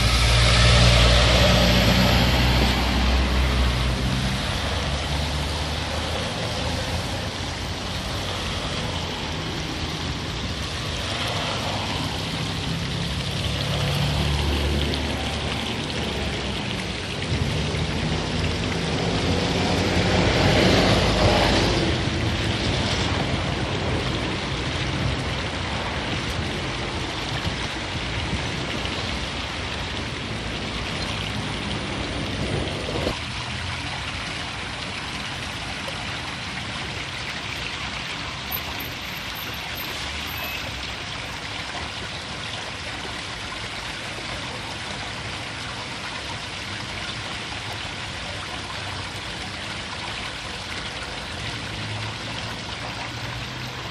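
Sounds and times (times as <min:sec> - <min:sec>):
passing vehicle engine: 0:00.0 - 0:26.8
water rushing down a ditch: 0:00.0 - 0:53.9.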